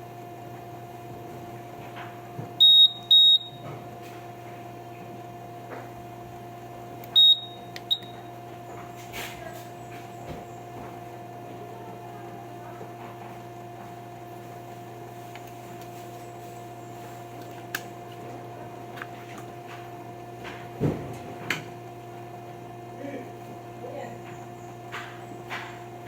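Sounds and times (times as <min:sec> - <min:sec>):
electrical hum: 0:00.0 - 0:26.0.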